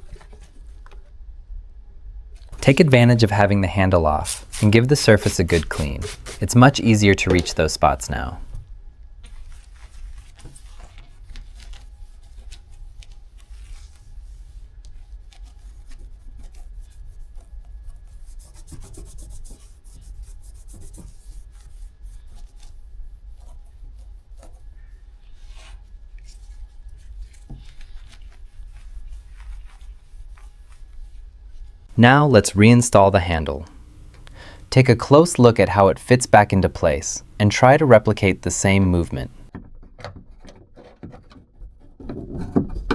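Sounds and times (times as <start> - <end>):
cloth rubbing car door: 4.1 - 8.6.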